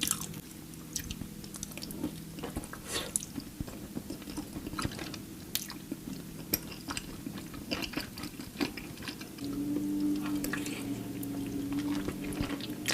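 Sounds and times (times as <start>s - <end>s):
steady low hum: 0.0s - 12.9s
wet chewing of pasta: 1.0s - 12.9s.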